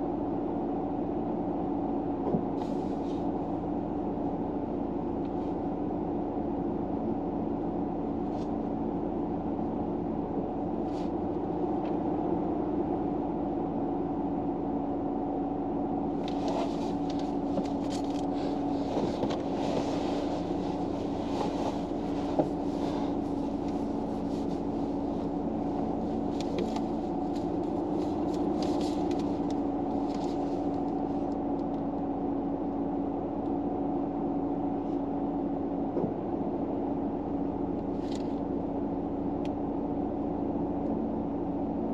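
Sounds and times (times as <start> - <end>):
low mechanical hum in a car: 0.0 - 41.9
light rustling and crackling: 16.2 - 31.8.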